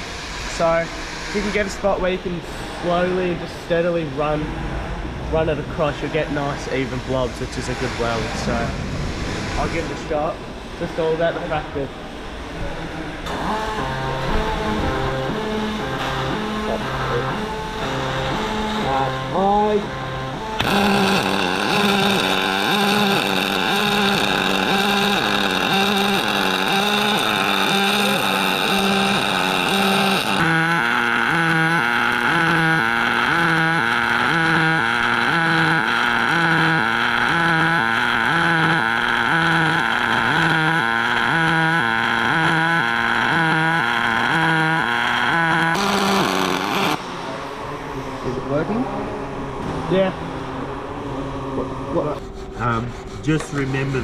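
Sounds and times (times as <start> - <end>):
low repeating music riff: 13.2 - 25.2
welding arc humming and hissing: 13.3 - 42.2.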